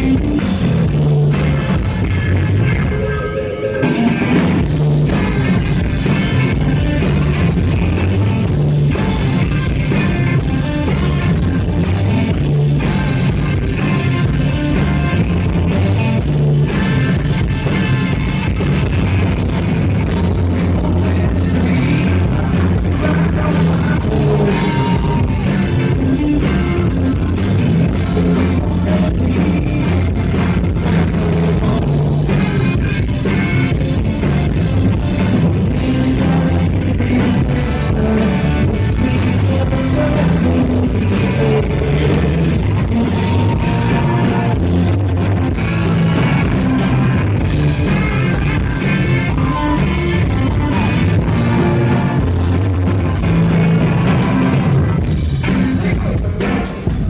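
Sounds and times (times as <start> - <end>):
drum kit: 0.0 - 57.0
electric guitar: 0.0 - 57.0
person singing: 20.0 - 34.4, 35.0 - 54.7.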